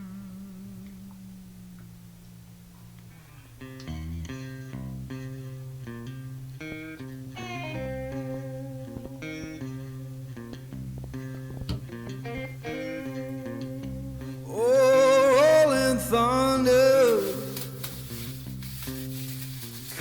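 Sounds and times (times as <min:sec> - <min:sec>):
steady bass line: 0:00.0 - 0:14.6
plucked guitar notes: 0:00.0 - 0:18.5.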